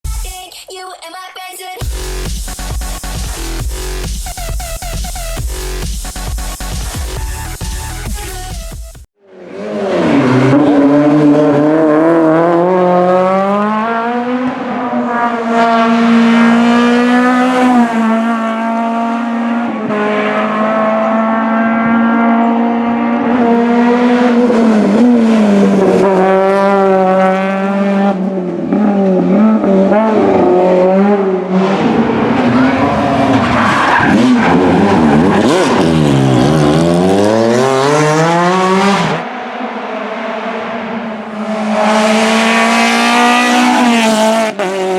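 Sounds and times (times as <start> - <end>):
rally car engines revving: 9.3 - 44.9.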